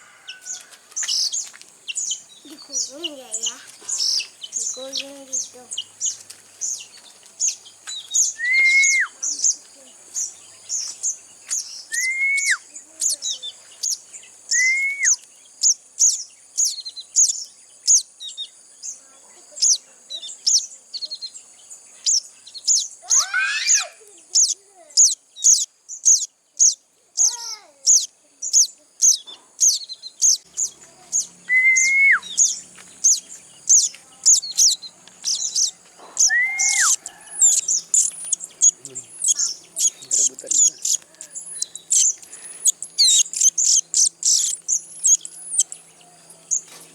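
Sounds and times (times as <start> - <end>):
bird falling calls: 0.0 - 13.6, 23.0 - 24.0, 29.2 - 46.9
young birds chirping: 0.0 - 46.9
bird whistled notes: 8.2 - 9.2, 11.9 - 12.7, 14.5 - 15.2, 29.1 - 45.8.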